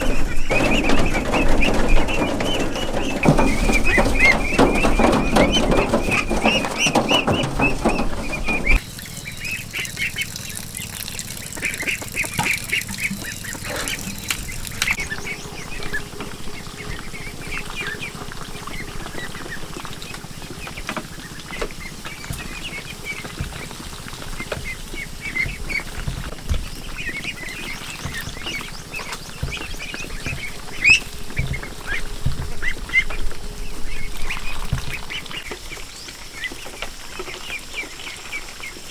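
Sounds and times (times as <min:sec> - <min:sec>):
birds chirping: 0:00.0 - 0:38.9.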